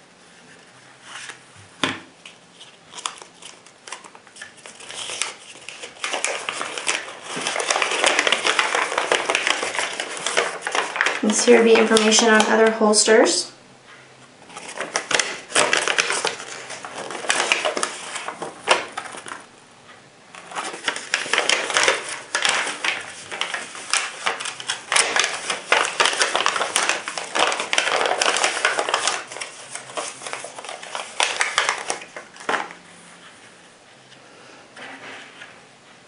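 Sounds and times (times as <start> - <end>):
packaging crinkling and rustling: 2.2 - 12.9, 14.4 - 19.5, 20.4 - 32.8.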